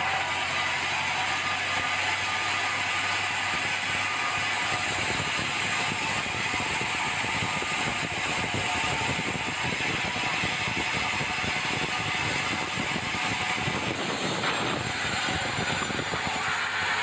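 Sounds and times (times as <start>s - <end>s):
sawmill saw whirring: 0.0s - 17.0s
dense rapid rattle: 9.8s - 17.0s.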